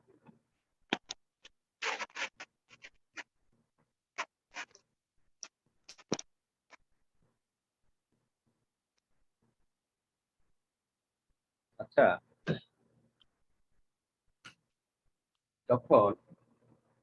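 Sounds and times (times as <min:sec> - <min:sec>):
pen scratching while writing: 0:00.9 - 0:03.4, 0:04.1 - 0:06.8.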